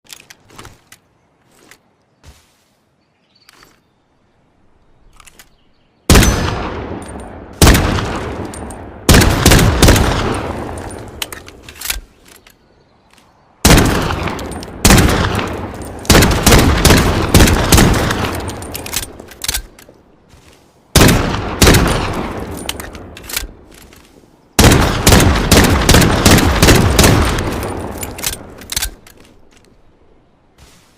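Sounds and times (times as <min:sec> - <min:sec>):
loud pistol shots echoing: 0:07.6 - 0:10.8.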